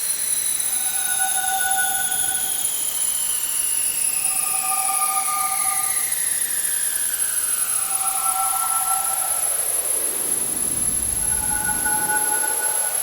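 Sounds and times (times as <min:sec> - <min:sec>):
high whining tones falling: 0:07.6 - 0:13.0
spaceship engine hiss: 0:09.4 - 0:13.0.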